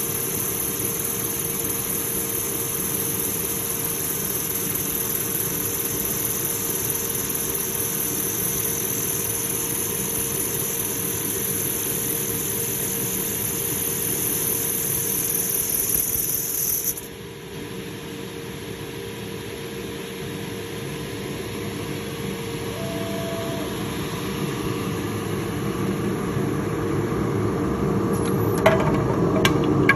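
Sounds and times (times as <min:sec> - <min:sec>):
high-pitched machine whine: 0:00.0 - 0:28.9
woodworking machine humming: 0:22.4 - 0:26.4.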